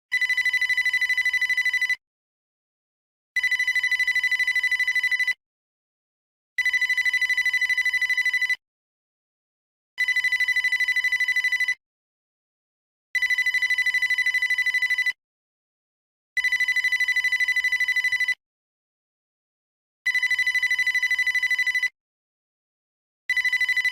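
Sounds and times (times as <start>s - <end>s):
electronic telephone ringer trilling: 0.1s - 2.0s, 3.4s - 5.4s, 6.6s - 8.6s, 10.0s - 11.8s, 13.2s - 15.2s, 16.4s - 18.4s, 23.3s - 23.9s.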